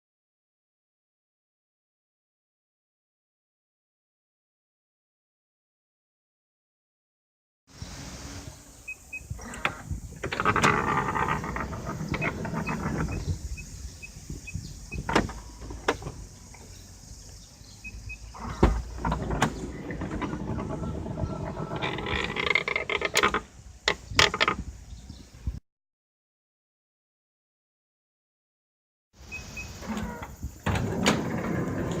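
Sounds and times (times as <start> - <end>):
sliding door along track: 9.3 - 14.1, 18.0 - 24.6, 29.3 - 32.0
door and latch clunks: 14.9 - 16.7, 18.4 - 24.6, 29.7 - 32.0.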